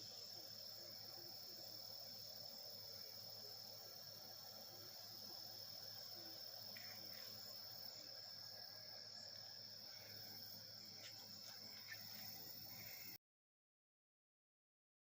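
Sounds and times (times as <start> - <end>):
faint ticks: 6.6 - 8.1, 9.2 - 10.3.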